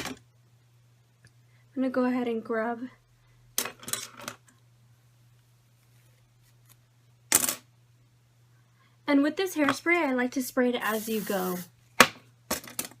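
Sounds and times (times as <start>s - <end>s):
hairspray burst: 10.8s - 11.7s.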